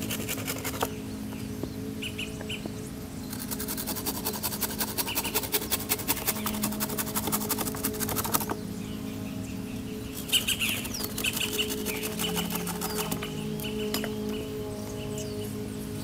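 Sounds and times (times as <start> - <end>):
birds chirping: 0.0 - 16.0
fast even clicking: 3.3 - 8.6.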